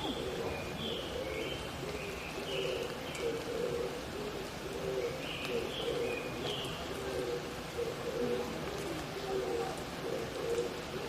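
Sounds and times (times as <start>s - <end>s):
doves cooing: 0.0s - 11.0s
water dripping in forest: 0.0s - 11.0s.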